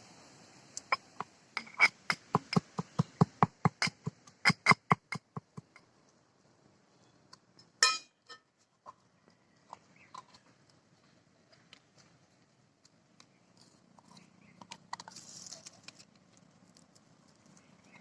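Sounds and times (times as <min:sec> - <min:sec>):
sharp knocks: 0:00.9 - 0:05.8.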